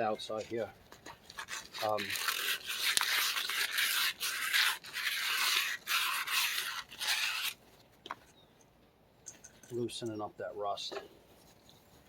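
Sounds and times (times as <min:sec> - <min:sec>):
metal scrubbed with abrasive: 0:01.3 - 0:07.6.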